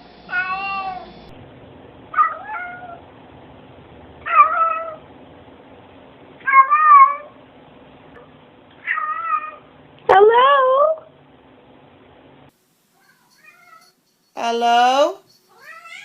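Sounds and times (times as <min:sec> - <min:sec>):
cat meowing: 0:00.3 - 0:01.1, 0:02.2 - 0:03.0, 0:06.4 - 0:07.3, 0:08.8 - 0:09.6, 0:15.6 - 0:16.0.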